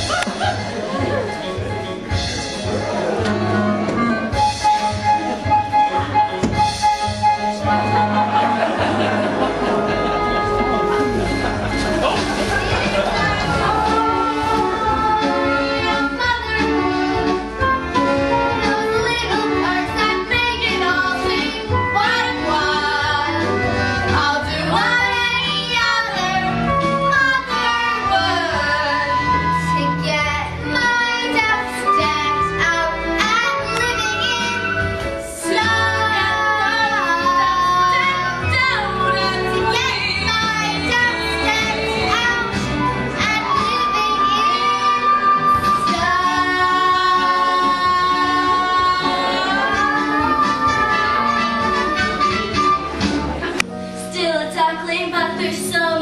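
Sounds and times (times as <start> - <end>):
instrumental accompaniment with bass: 0.0 - 56.0
young voices singing: 7.8 - 52.6.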